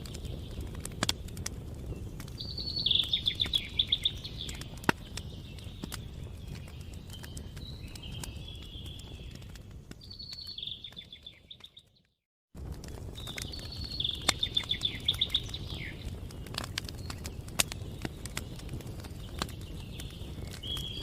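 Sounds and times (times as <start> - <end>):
campfire crackling and popping: 0.0 - 21.0
songbird trilling: 2.4 - 4.7, 13.6 - 16.0.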